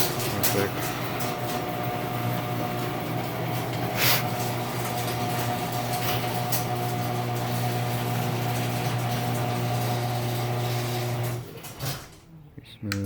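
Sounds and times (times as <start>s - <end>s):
metal rollers rattling in track: 0.0s - 12.1s
garage door opener motor hum: 0.0s - 12.4s.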